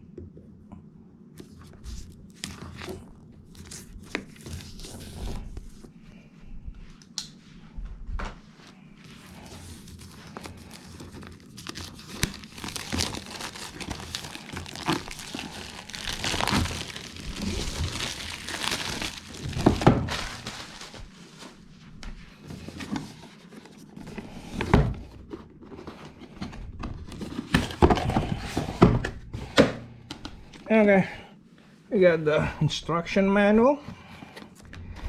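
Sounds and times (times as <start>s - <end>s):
packaging crinkling and tearing: 9.2s - 21.2s
box thunks: 19.4s - 20.4s.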